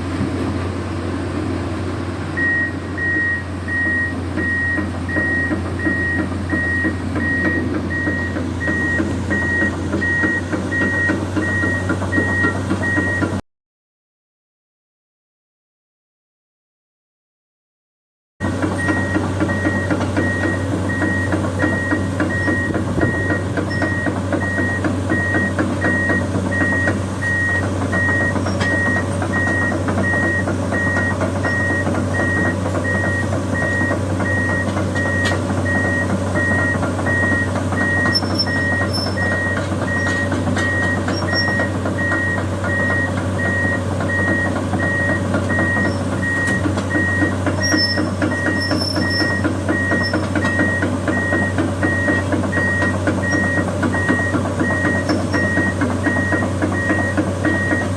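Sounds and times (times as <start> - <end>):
diesel engine running: 0.0 - 13.4, 18.4 - 57.9
rapid reversing alarm beeps: 2.4 - 13.4, 18.8 - 57.9.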